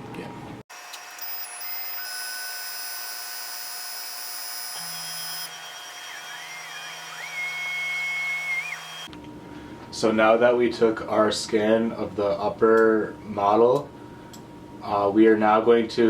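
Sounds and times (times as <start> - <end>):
high electronic whines: 0.8 - 9.1.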